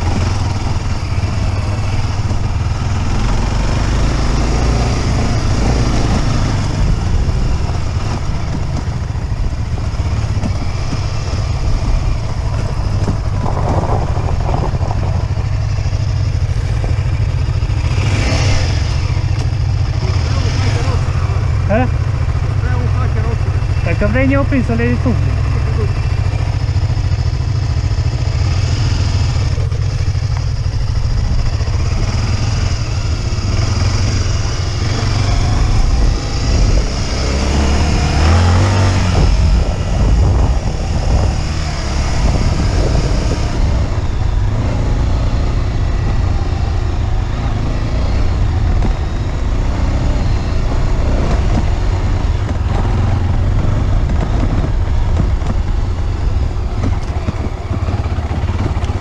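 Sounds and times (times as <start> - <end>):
motorcycle engine rumbling: 0.0 - 59.0.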